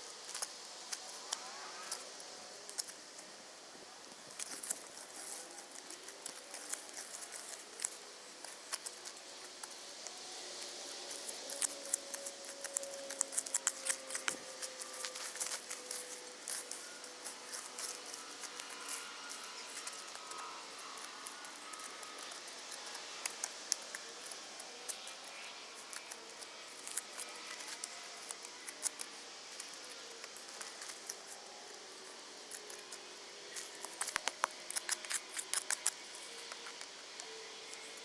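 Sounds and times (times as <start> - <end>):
small sharp clicks and snips: 4.3 - 38.0.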